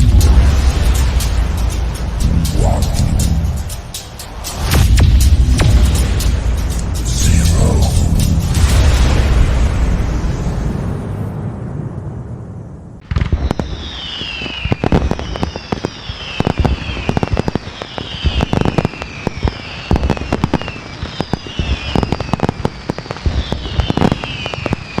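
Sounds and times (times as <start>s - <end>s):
fireworks bangs and crackles: 0.0s - 12.1s, 13.0s - 25.0s
falling firework whistles: 13.1s - 25.0s.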